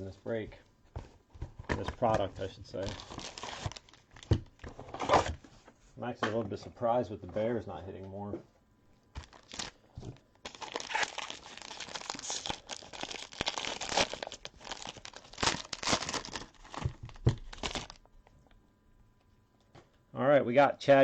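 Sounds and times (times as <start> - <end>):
wrapper tearing and crinkling: 2.8 - 5.3, 9.2 - 9.8, 10.4 - 18.1.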